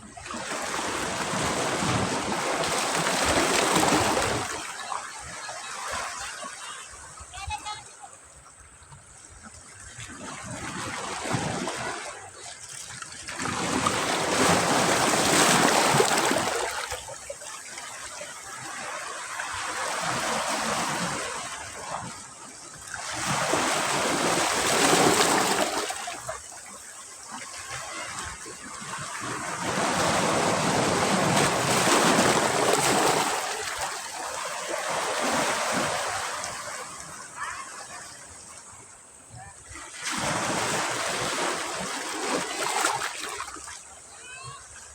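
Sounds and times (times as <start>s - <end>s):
sea waves breaking on beach: 0.0s - 44.9s.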